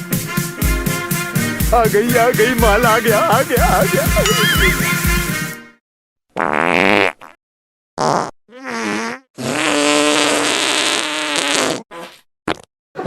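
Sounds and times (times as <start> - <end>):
fart sound effects: 8.0 - 12.7.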